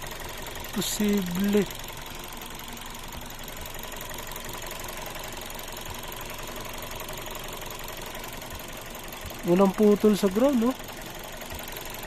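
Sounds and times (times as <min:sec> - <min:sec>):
car engine idling: 0:00.0 - 0:12.0
low engine thumps: 0:01.7 - 0:09.5, 0:10.8 - 0:12.0.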